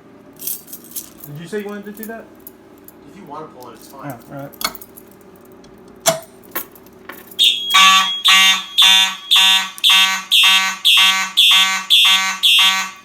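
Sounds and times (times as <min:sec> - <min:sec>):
fire alarm horn blasts: 0:07.4 - 0:13.0.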